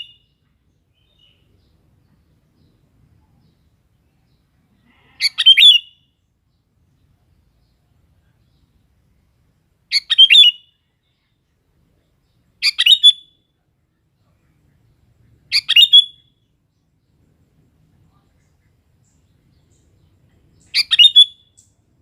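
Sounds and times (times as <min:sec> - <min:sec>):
bulbul singing: 0:09.9 - 0:10.9, 0:12.2 - 0:13.5, 0:15.4 - 0:17.3, 0:18.4 - 0:22.0.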